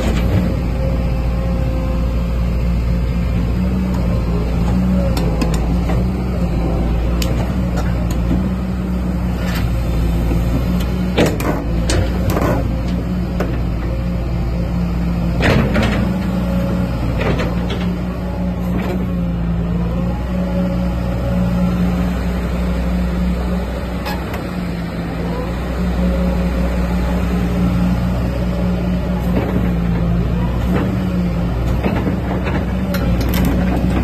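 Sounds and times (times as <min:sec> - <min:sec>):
engine whine: 0:00.0 - 0:34.0
excavator diesel engine running: 0:00.0 - 0:34.0.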